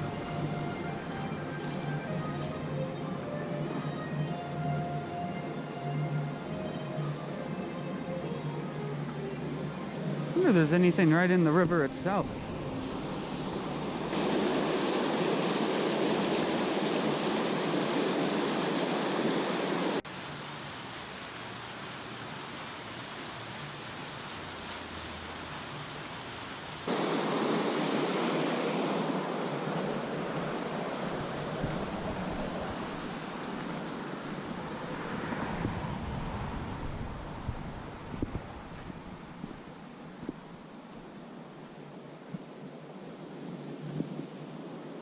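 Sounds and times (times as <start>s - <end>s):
water rushing through dam: 13.5s - 35.8s.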